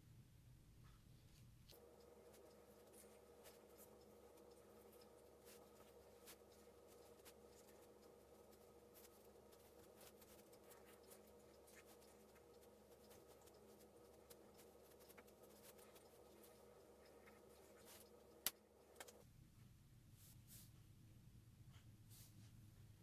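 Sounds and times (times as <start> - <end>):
low steady hum: 0.0 - 23.0
marker pen scratching on paper: 2.1 - 19.2.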